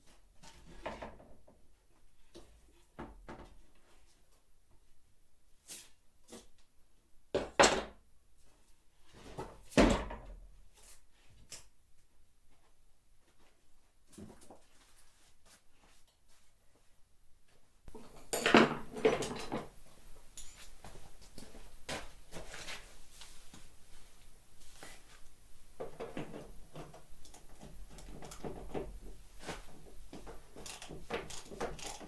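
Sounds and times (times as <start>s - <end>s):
metal tools clattering: 18.0s - 21.1s.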